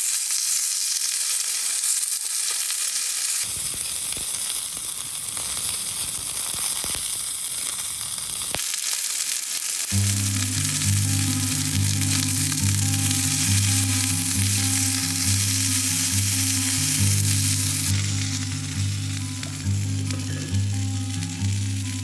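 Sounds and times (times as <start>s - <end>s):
food sizzling in a pan: 0.0s - 22.0s
music with slow bass notes: 9.9s - 22.0s.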